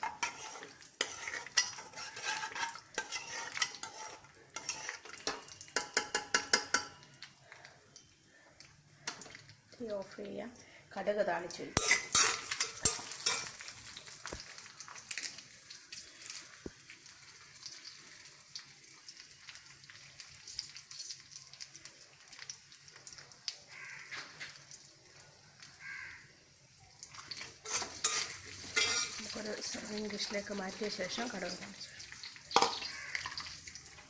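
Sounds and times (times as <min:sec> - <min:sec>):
seeds sizzling in hot oil: 0:00.0 - 0:34.0
seeds crackling: 0:27.0 - 0:34.0.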